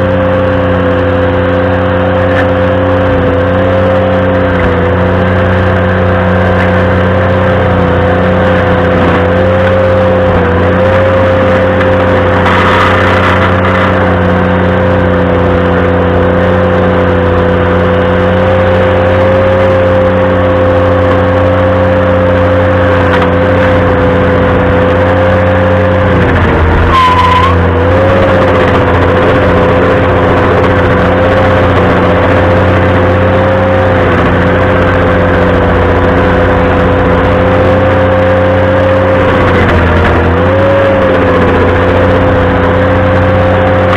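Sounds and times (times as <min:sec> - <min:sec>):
stump grinder: 0:00.0 - 0:43.9
tractor engine running at high speed: 0:00.0 - 0:43.9
short high squeal: 0:11.8 - 0:14.2, 0:26.2 - 0:27.8.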